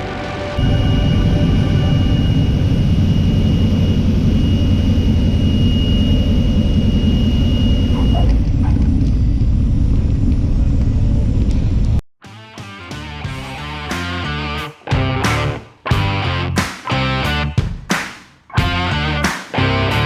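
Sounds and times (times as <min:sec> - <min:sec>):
thin steady high tone: 0:00.0 - 0:08.3
propeller aircraft engine drone: 0:00.0 - 0:11.9.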